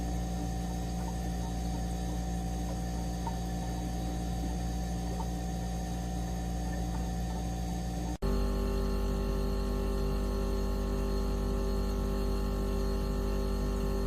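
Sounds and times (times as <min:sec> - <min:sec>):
synthetic layered drone tone: 0:00.0 - 0:08.2
loud steady hum: 0:00.0 - 0:14.0.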